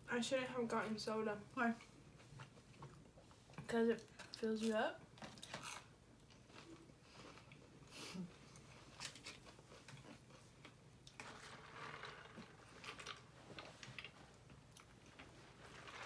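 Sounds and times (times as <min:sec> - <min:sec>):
people chewing: 0:01.8 - 0:04.4, 0:05.2 - 0:11.2, 0:12.8 - 0:16.0.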